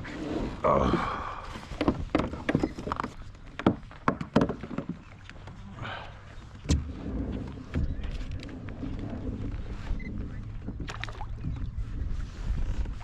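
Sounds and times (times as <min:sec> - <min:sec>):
sharp knocks and clicks: 0:01.8 - 0:05.1
low rumble: 0:05.6 - 0:13.0.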